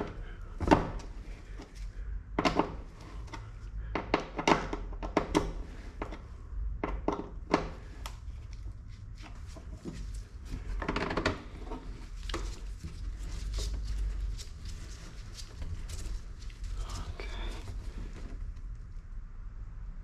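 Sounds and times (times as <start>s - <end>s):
scraping rustle: 7.8s - 18.7s.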